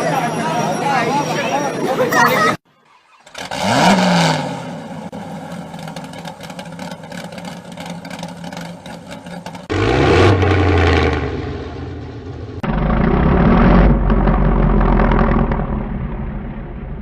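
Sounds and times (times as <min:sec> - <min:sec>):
engine blipping: 0:00.0 - 0:17.0
sports car engine revving: 0:03.3 - 0:16.8.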